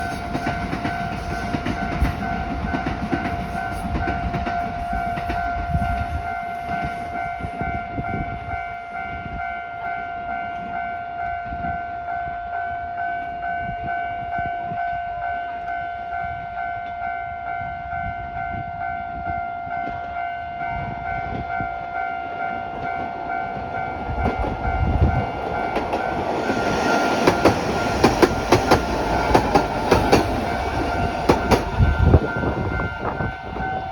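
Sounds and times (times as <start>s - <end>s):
train wheel clatter: 0.0s - 7.6s, 22.4s - 33.9s
heavy train rumble: 0.0s - 33.9s
level crossing alarm ringing: 0.0s - 33.9s.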